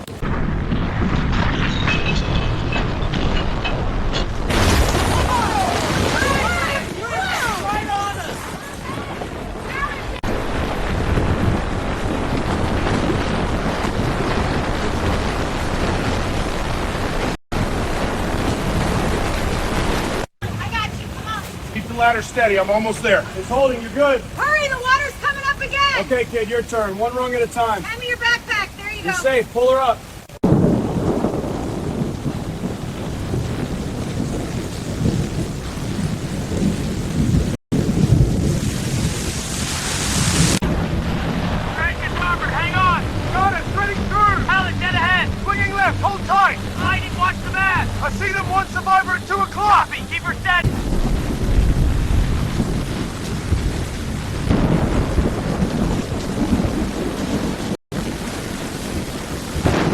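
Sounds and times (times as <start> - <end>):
floodwater rushing: 0.0 - 59.9
heavy rain: 0.0 - 59.9
wind on microphone: 2.6 - 20.3, 30.4 - 41.8, 50.6 - 59.9
low rumble: 40.6 - 58.2.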